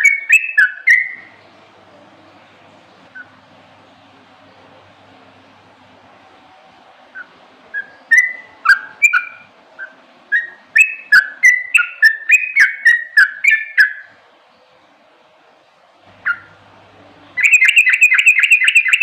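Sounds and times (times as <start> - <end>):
bird singing whistled notes: 0.0 - 1.4, 7.1 - 14.1, 17.4 - 19.0.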